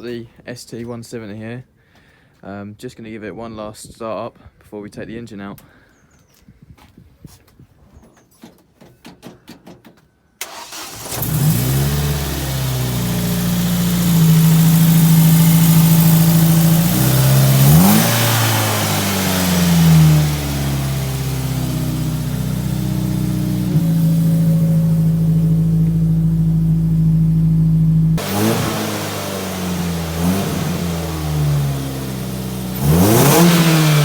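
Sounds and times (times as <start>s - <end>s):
car engine starting and revving: 10.4s - 34.0s.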